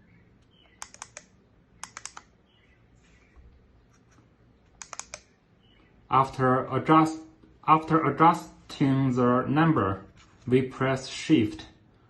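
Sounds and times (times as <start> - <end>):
push buttons clicking: 0.4 - 2.3, 4.7 - 5.3.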